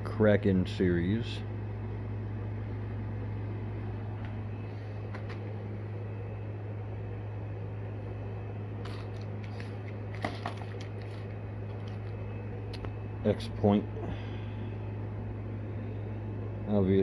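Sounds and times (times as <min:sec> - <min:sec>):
low room hum: 0:00.0 - 0:17.0
packaging clicks and crinkles: 0:08.8 - 0:12.8.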